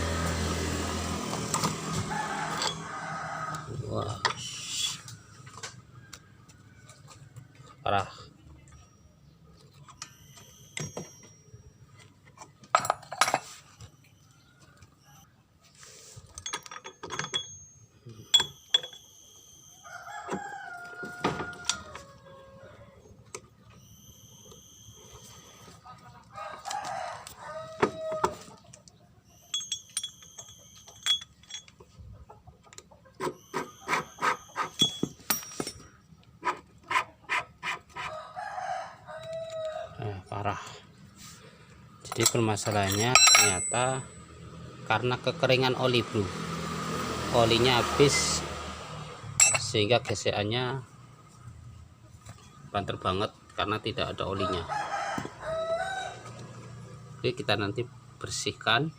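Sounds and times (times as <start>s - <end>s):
rooster crowing: 1.8s - 7.3s, 19.6s - 23.2s, 26.2s - 28.6s, 37.9s - 40.8s, 54.2s - 56.8s.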